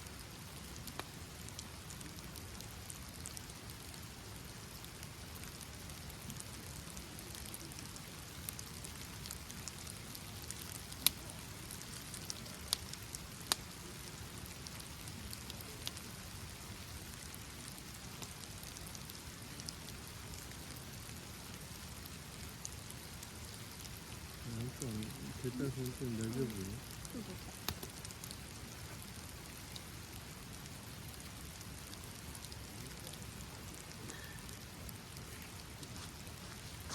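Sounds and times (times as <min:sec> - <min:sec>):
rain falling: 0:00.0 - 0:36.9.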